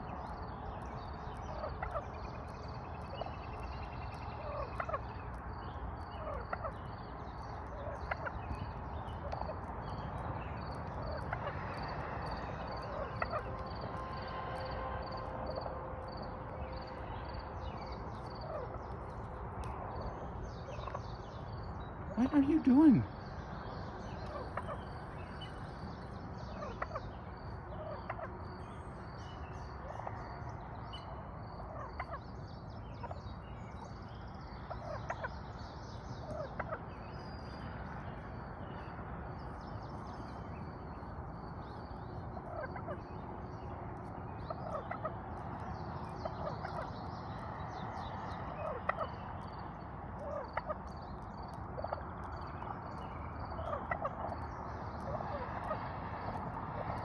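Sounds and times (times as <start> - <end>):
birds calling: 0.3 - 14.2, 16.9 - 57.0.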